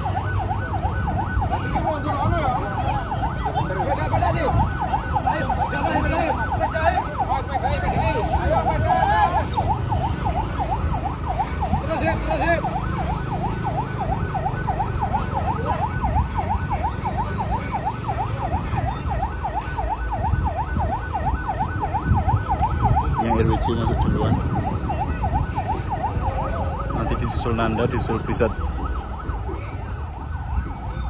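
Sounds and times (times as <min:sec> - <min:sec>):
electronic siren yelping: 0:00.0 - 0:31.0
truck engines rumbling: 0:00.0 - 0:31.0.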